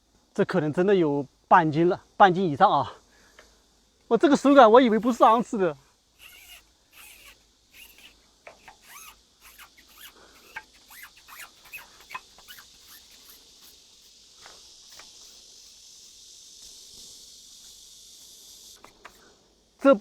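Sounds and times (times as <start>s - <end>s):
insects chirring: 0.0s - 20.0s
catfish creaking squeaks: 6.2s - 13.8s.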